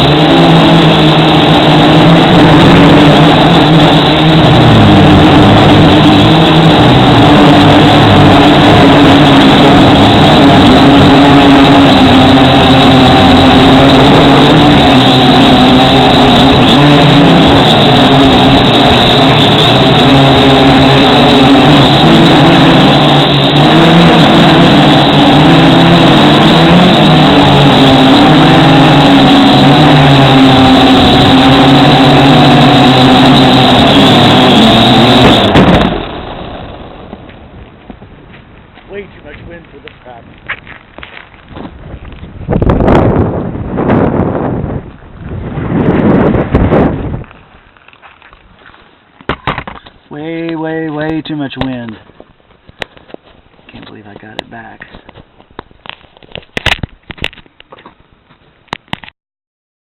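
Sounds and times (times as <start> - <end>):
drone propellers whining: 0.0 - 58.2.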